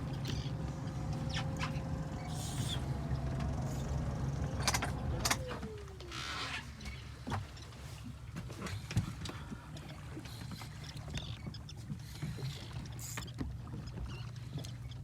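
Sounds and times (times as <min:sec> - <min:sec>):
boat engine whining: 0:00.0 - 0:07.7.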